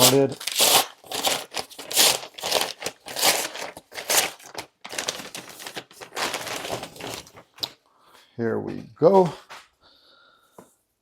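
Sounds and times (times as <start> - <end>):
packaging crinkling and rustling: 0.0 - 7.8.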